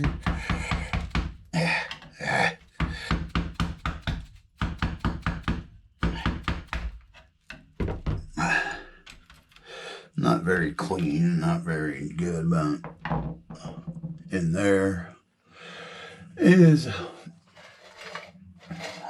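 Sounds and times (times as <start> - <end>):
tool scraping: 17.4 - 19.0.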